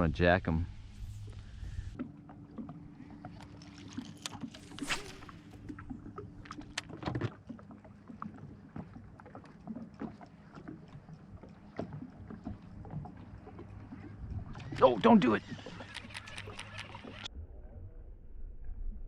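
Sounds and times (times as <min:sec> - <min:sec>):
low steady hum: 0:00.0 - 0:15.2
water lapping against boat hull: 0:01.2 - 0:17.3.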